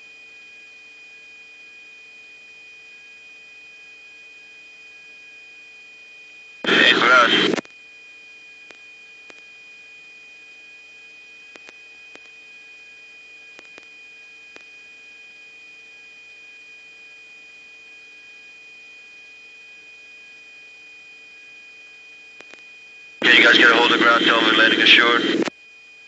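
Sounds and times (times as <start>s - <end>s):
faint electronic tone and hum: 6.7s - 16.6s, 17.4s - 26.0s.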